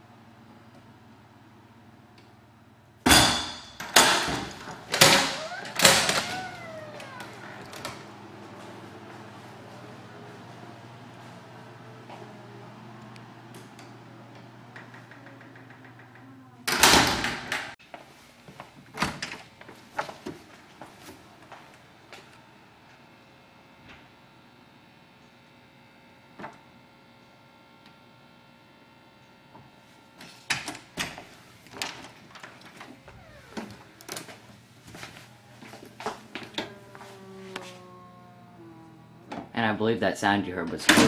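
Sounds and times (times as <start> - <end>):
door opening rush: 4.2 - 11.8, 13.4 - 17.8, 31.7 - 39.6.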